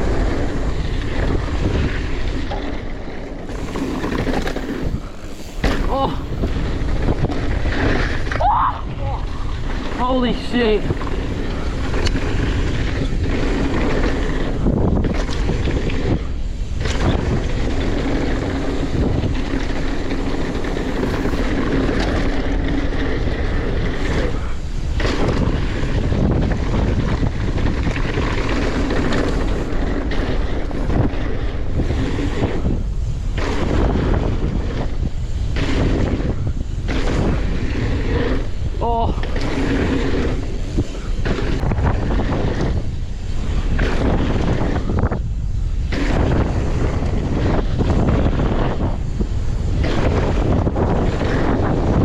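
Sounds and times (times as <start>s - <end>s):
bike tyre noise: 0.0s - 52.0s
wind rushing over microphone: 0.0s - 52.0s.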